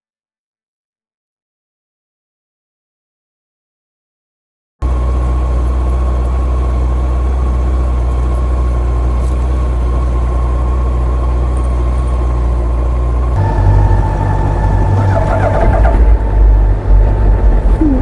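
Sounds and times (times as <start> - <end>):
motorcycle engine idling: 4.8 - 18.0
faint steady whine: 4.9 - 18.0.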